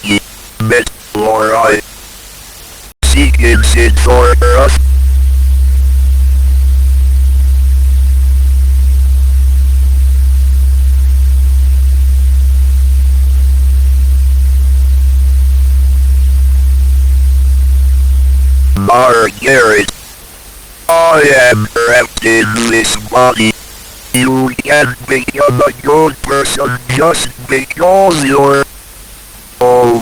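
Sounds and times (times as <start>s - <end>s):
static hiss: 0.0s - 30.0s
low hum: 3.0s - 19.8s.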